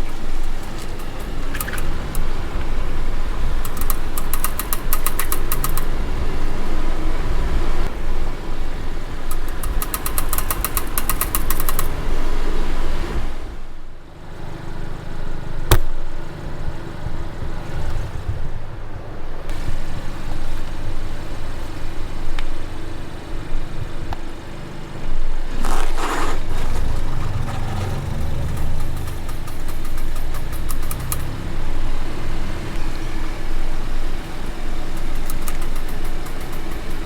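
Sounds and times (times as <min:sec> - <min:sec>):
car wheel clicking rapidly: 0:00.0 - 0:07.4, 0:09.2 - 0:12.0, 0:25.3 - 0:32.8, 0:33.5 - 0:37.0
road and engine rumble: 0:00.0 - 0:37.0.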